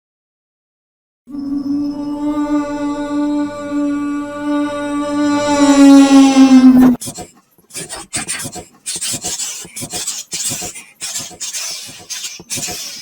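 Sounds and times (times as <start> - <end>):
mouth imitating steam locomotive: 1.3 - 13.0.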